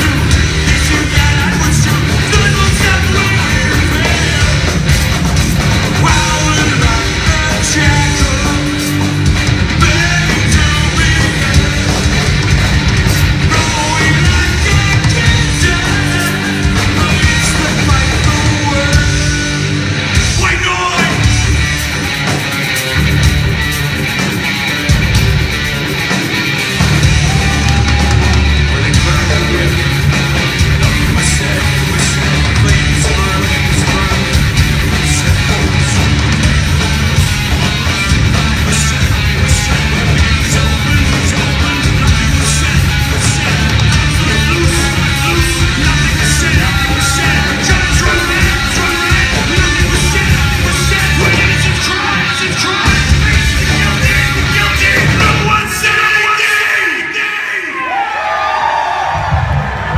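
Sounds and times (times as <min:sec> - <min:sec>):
heavy metal band playing live: 0:00.0 - 0:58.0
shouted vocals: 0:27.0 - 0:36.4, 0:37.5 - 0:59.9.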